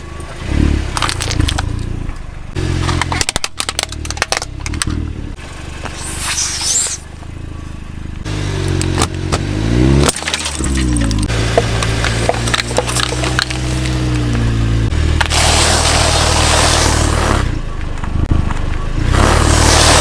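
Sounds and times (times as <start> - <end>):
objects crunching under tyres: 0.2 - 7.8, 8.7 - 20.0
brief hiss: 5.9 - 7.1
car engine revving: 8.2 - 20.0.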